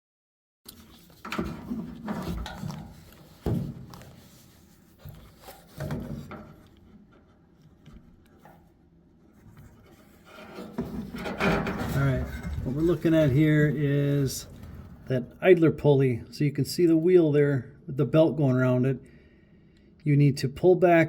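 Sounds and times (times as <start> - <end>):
rubbing and scraping: 0.8 - 8.6, 9.2 - 15.3.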